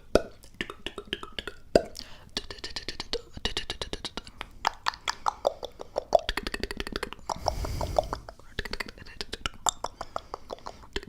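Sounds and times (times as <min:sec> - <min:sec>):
tongue and lip clicks: 0:00.1 - 0:11.0
breath on microphone: 0:07.3 - 0:08.6.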